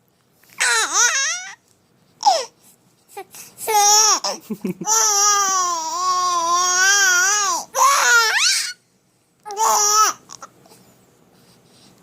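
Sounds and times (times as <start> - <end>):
baby crying: 0.6 - 1.6, 3.6 - 8.8, 9.5 - 10.5.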